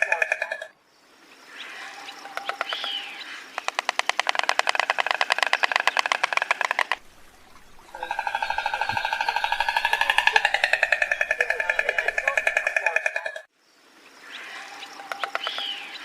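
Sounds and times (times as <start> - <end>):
stork clattering its bill: 0.0 - 0.7, 2.2 - 13.5, 15.0 - 15.8
faint bird chirps: 7.4 - 16.0.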